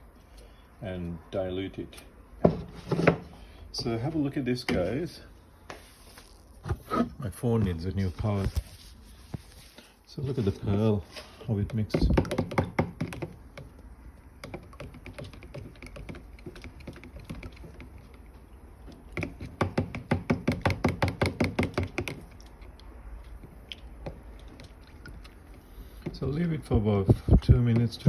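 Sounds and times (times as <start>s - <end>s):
paint mixing tapping and clicking: 11.6s - 28.0s.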